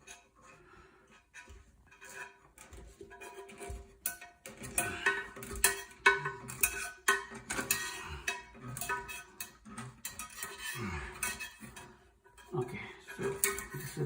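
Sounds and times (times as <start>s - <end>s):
plastic parts clicking and knocking: 1.4s - 11.9s.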